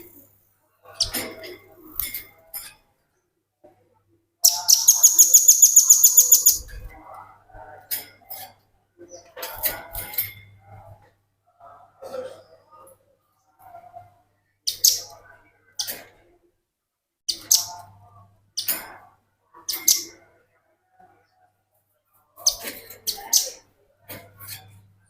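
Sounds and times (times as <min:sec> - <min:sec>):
bird rattling trill: 0:04.4 - 0:06.7
sharp bird calls: 0:04.4 - 0:06.7.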